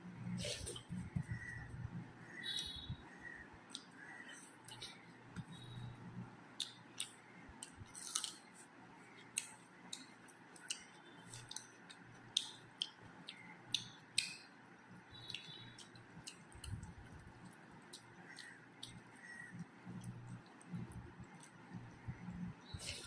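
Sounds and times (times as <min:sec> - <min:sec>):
person chewing food: 0:03.7 - 0:14.3, 0:15.2 - 0:23.0.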